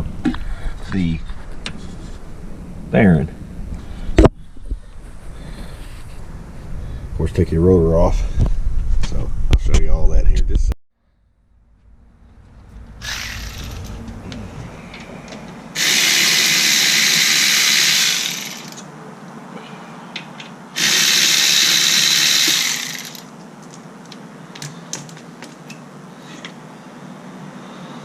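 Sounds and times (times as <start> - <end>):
power tool running: 13.0 - 14.2, 15.8 - 18.9, 20.8 - 23.3.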